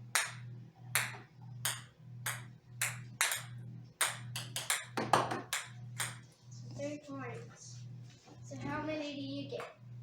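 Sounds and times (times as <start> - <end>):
steady low hum: 0.0 - 10.0
ping pong balls bouncing on floor: 0.1 - 6.2.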